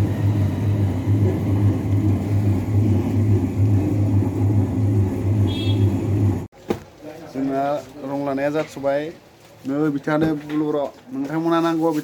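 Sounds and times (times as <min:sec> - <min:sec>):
paint mixing machine humming: 0:00.0 - 0:06.5.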